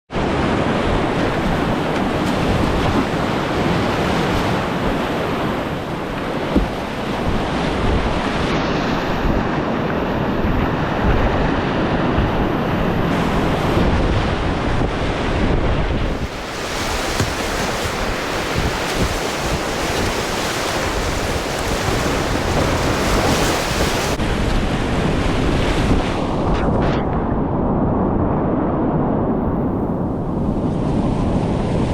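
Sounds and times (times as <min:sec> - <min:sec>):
wind buffeting microphone: 0:00.1 - 0:31.9
whitewater rapids rushing: 0:16.0 - 0:24.2.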